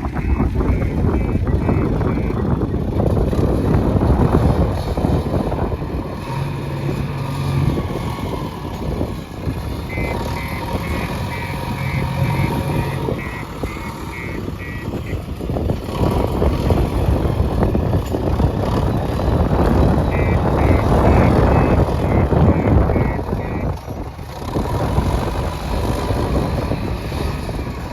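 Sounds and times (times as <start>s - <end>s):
diesel engine working: 0.0s - 27.9s
reversing alarm beeping: 9.9s - 15.2s, 20.1s - 23.7s.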